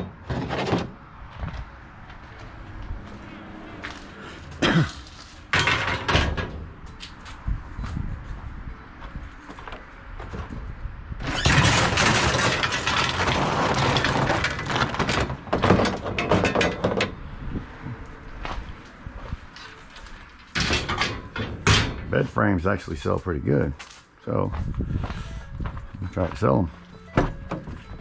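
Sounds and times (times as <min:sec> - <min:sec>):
hard items clattering and rattling: 0:04.6 - 0:06.6, 0:11.2 - 0:17.2, 0:19.6 - 0:22.1.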